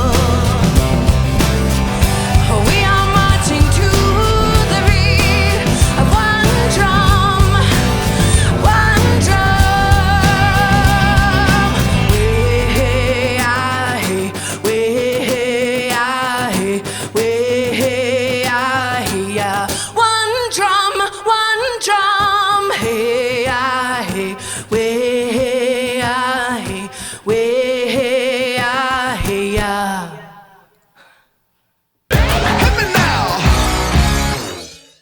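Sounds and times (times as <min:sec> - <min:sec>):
wordless singing with vibrato: 0:00.0 - 0:31.1, 0:32.1 - 0:35.0.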